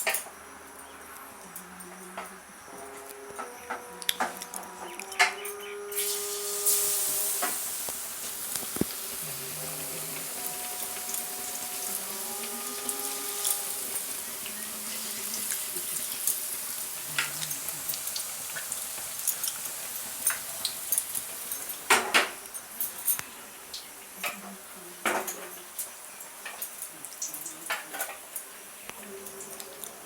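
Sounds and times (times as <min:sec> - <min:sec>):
dishes clinking and knocking: 0:01.8 - 0:14.6, 0:16.9 - 0:23.4, 0:24.2 - 0:26.9, 0:27.5 - 0:28.4
steady hiss: 0:05.5 - 0:30.0.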